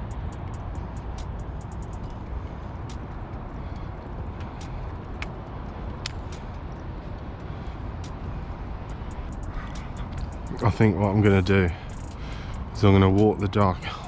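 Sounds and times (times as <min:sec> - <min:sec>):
sharp high-pitched ticks: 0:00.0 - 0:02.2, 0:08.9 - 0:14.0
low city rumble: 0:00.0 - 0:14.0.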